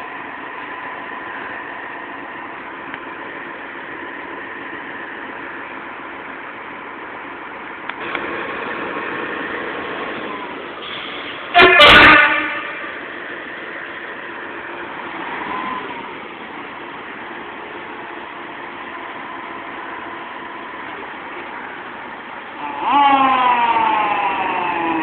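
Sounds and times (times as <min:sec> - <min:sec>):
machine engine running: 0:08.0 - 0:11.4
loud horn blast: 0:10.9 - 0:13.0.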